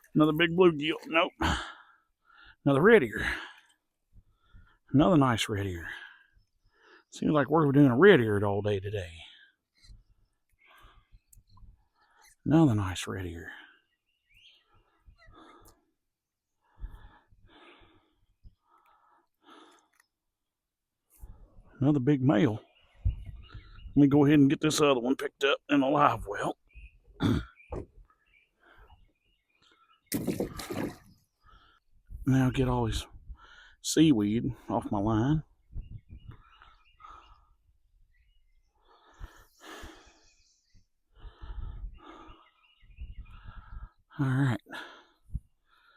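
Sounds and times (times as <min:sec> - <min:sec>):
man breathing heavily: 0:03.2 - 0:04.9, 0:14.6 - 0:20.0, 0:38.6 - 0:45.9.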